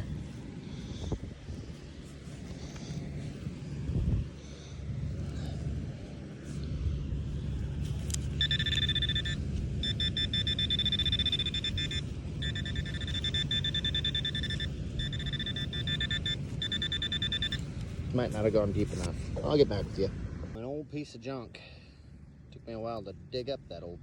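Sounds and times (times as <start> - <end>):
wind rumble: 0.0 - 8.5
metal detector buzzing tone: 8.4 - 17.6.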